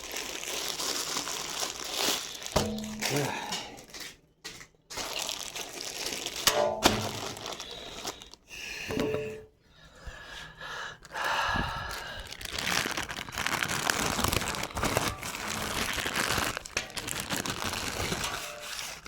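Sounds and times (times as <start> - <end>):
packaging tearing: 0.0 - 4.1, 4.9 - 8.4, 12.2 - 19.0
plastic packaging crinkling: 0.0 - 9.2, 11.8 - 19.0.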